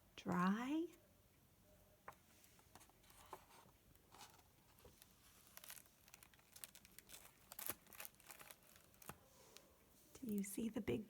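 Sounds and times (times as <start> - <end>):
faint rustles and clicks: 2.0 - 11.0.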